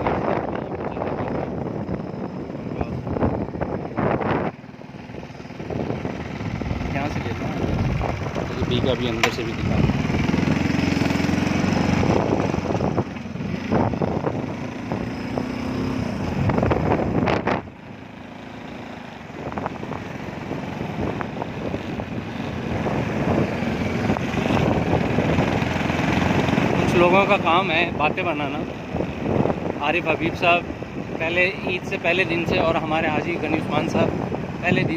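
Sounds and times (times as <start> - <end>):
road and wind noise: 0.0 - 34.9
vehicle engine running: 0.0 - 34.9.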